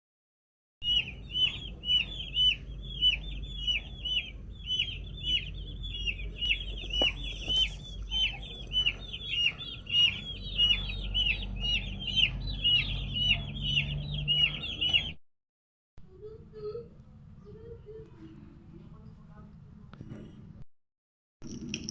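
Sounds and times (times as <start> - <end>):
birds peeping: 0.8 - 15.2
low background rumble: 0.8 - 15.2.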